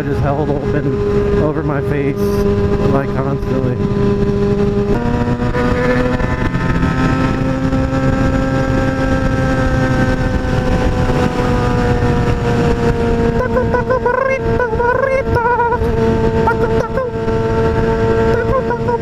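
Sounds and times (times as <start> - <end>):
wind rush: 0.0 - 13.8
motorcycle engine cruising: 0.0 - 19.0.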